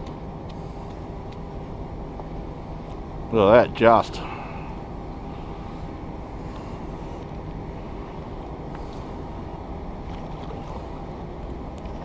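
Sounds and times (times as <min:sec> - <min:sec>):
wind: 0:00.0 - 0:12.0.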